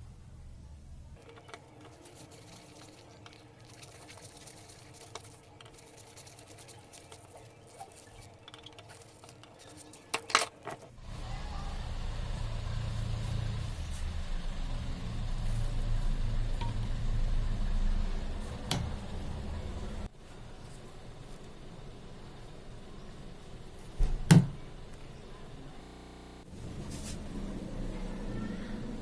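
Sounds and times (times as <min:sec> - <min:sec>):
low motor hum: 0:11.0 - 0:29.0.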